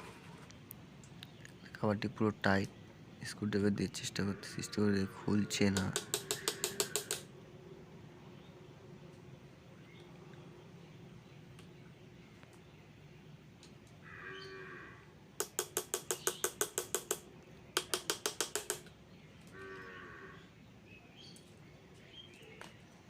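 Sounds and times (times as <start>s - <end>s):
metal tapping on screwdriver: 5.7s - 7.2s, 15.4s - 17.2s, 17.8s - 18.9s.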